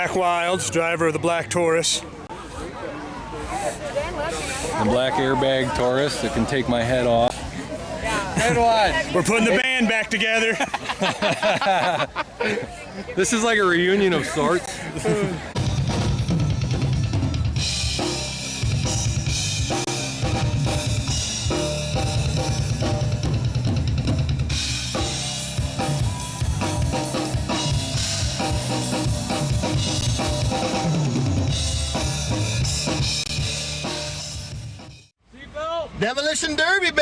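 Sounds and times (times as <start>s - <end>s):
song with drums and heavy bass: 15.5s - 35.1s.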